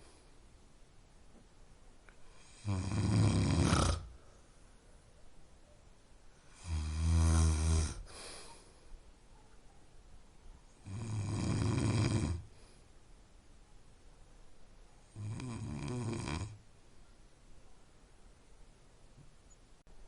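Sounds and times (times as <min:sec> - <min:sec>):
person snoring: 0:02.4 - 0:04.2, 0:06.5 - 0:08.2, 0:10.8 - 0:12.5, 0:15.2 - 0:16.6.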